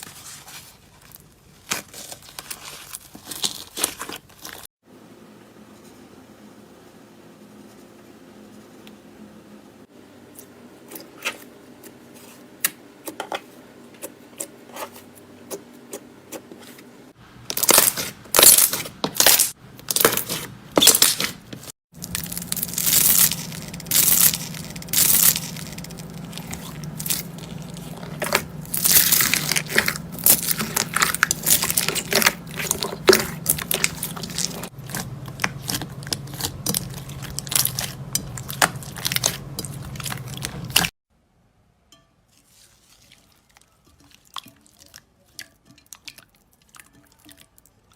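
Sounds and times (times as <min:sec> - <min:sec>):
slime crackling and popping: 0:22.0 - 0:40.9.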